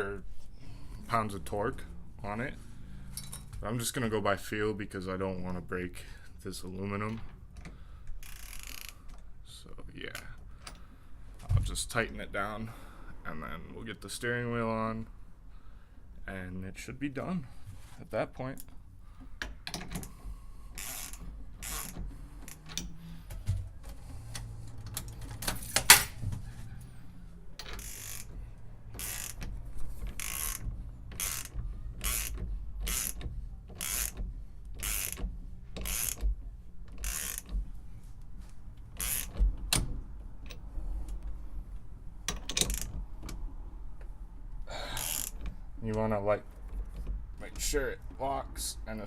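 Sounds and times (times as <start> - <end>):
ratchet wrench clicking: 8.2 - 8.9, 20.8 - 23.0, 27.6 - 37.5, 39.0 - 39.4, 44.9 - 45.5.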